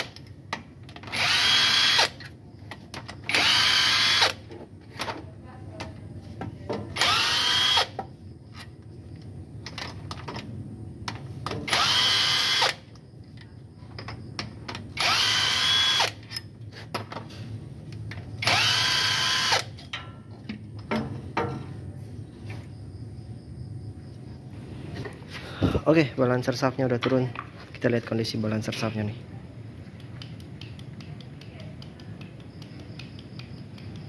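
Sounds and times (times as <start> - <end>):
cordless power tool whining: 1.1 - 2.1, 3.3 - 4.4, 7.0 - 8.0, 11.7 - 12.8, 15.0 - 16.2, 18.4 - 19.7
tools clicking and knocking: 29.9 - 34.0.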